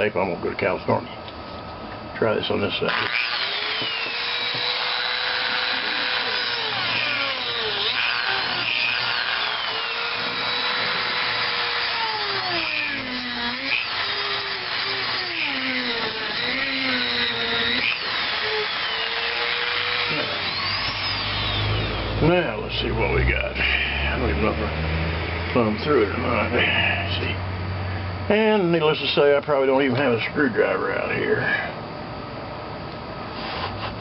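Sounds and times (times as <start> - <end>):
power tool grinding: 2.8 - 22.8.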